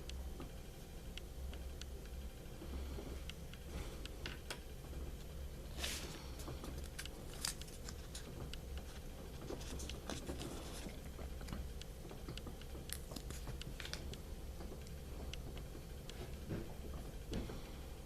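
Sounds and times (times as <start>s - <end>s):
low hum: 0.0s - 18.0s
small clicks and taps: 6.4s - 17.6s.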